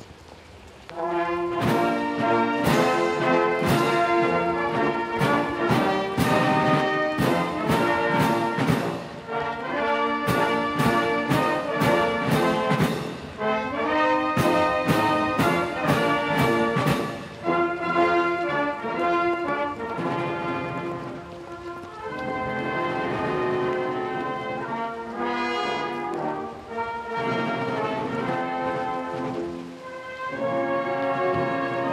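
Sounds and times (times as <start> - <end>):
brass band playing a march: 0.9 - 31.9
drum strikes: 1.6 - 4.3, 5.2 - 9.2, 10.3 - 13.4, 14.4 - 17.3.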